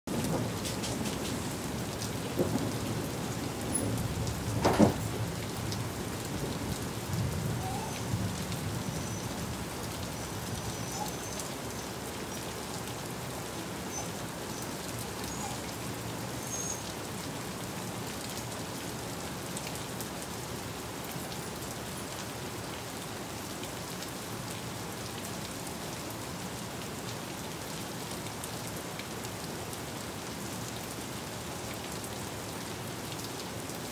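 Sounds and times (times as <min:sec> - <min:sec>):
low thunder rumble: 0:00.1 - 0:09.8
heavy rain on hard surfaces: 0:00.1 - 0:33.9.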